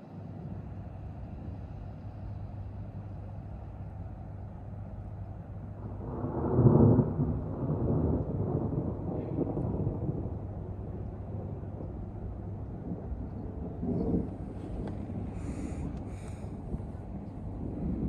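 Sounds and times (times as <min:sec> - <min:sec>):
thunder rumbling: 0:05.7 - 0:18.0.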